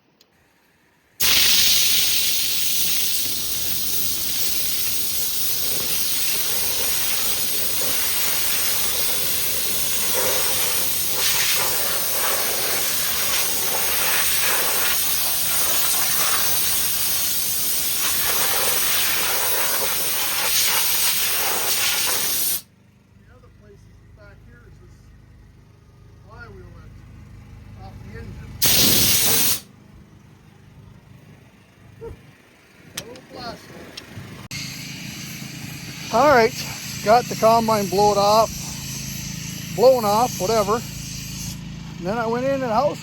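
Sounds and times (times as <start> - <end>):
compressed-air blow gun hissing: 1.2 - 22.6, 28.6 - 29.7, 34.8 - 41.6.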